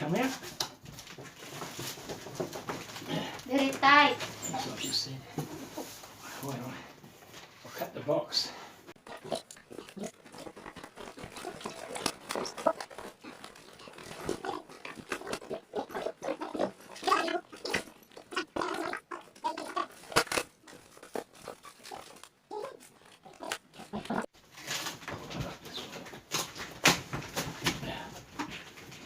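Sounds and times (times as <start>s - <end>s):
cardboard box cut and torn: 9.1s - 18.3s, 19.6s - 25.1s.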